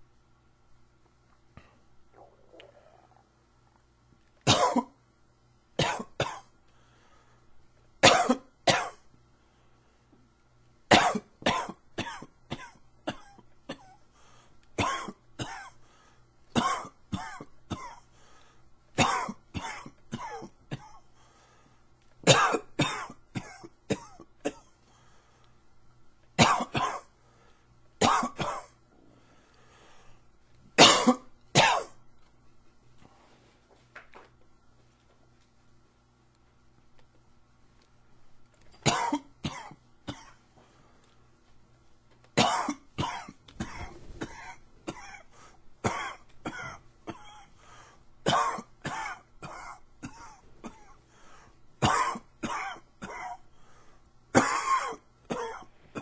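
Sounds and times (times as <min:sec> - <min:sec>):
man coughing harshly: 0:04.5 - 0:05.0, 0:05.8 - 0:06.5, 0:08.0 - 0:09.0, 0:10.9 - 0:14.0, 0:14.8 - 0:15.8, 0:16.6 - 0:18.0, 0:19.0 - 0:21.0, 0:22.3 - 0:24.7, 0:26.4 - 0:27.1, 0:28.0 - 0:28.8, 0:30.8 - 0:32.0, 0:38.8 - 0:40.4, 0:42.4 - 0:47.5, 0:48.3 - 0:51.0, 0:51.8 - 0:53.4, 0:54.4 - 0:56.0.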